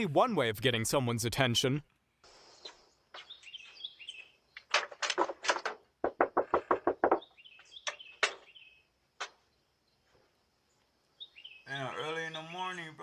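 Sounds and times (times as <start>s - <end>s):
knocking on a door: 6.0s - 7.3s.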